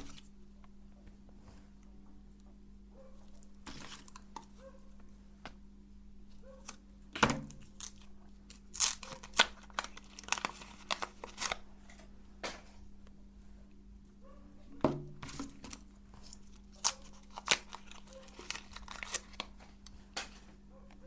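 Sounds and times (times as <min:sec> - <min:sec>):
steady low hum: 0:00.0 - 0:08.8
wrapper crinkling and tearing: 0:07.5 - 0:12.0, 0:15.2 - 0:20.4.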